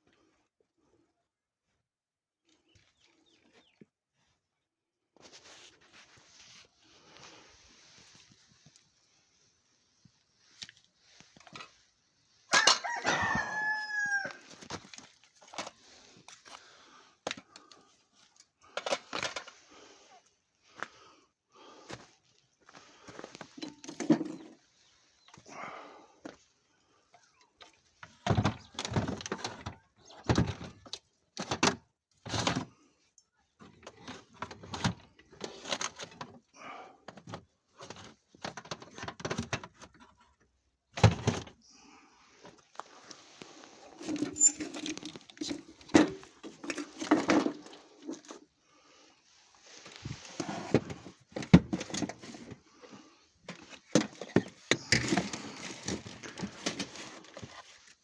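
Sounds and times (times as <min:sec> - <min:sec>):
scraping or rustling: 0:42.9 - 0:48.4, 0:49.4 - 0:58.0.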